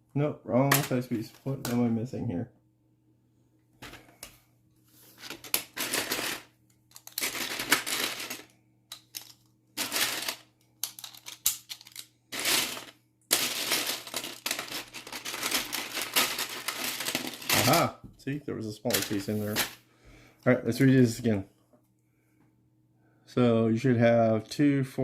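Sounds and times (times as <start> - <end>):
plastic pieces rattling and clicking: 5.2 - 17.9, 18.9 - 19.8.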